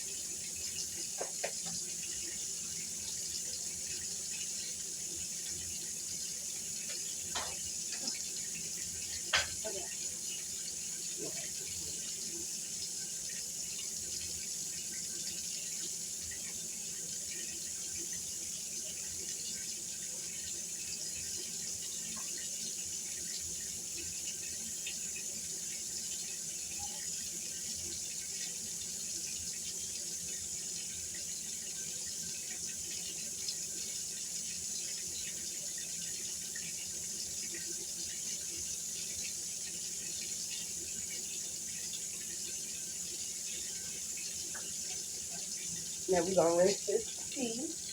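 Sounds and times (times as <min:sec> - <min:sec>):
tap water splashing into sink: 0:00.5 - 0:02.5, 0:05.5 - 0:10.2, 0:42.0 - 0:47.9.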